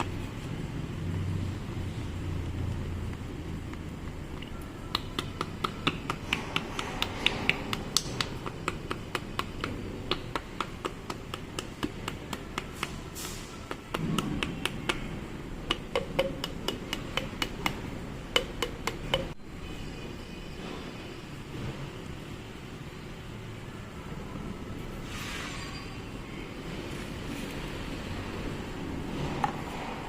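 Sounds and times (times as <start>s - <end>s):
hammer tapping on metal: 4.8s - 19.4s.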